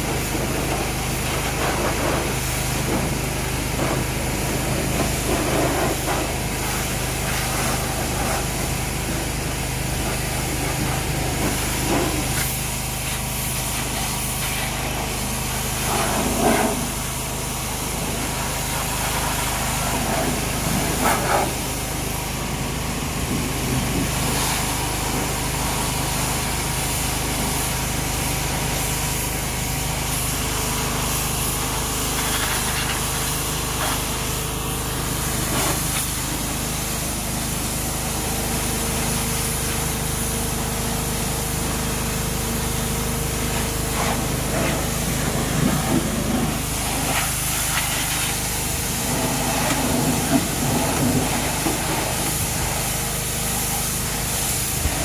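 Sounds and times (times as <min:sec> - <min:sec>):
pressure washer engine running: 0:00.0 - 0:55.0
water spray hissing: 0:00.1 - 0:22.2, 0:23.2 - 0:55.0.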